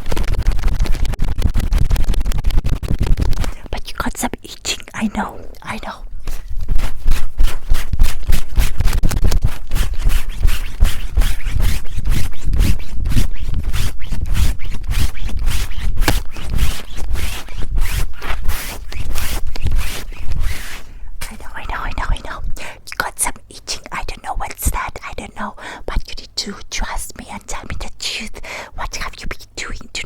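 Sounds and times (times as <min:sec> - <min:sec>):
scratching on microphones: 0:00.0 - 0:22.4.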